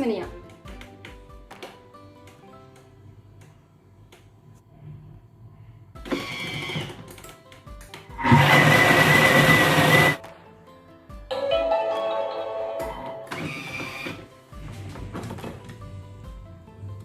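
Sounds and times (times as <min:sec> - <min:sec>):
faint background music: 0:00.0 - 0:17.0
food processor motor mixing batter: 0:08.2 - 0:10.2.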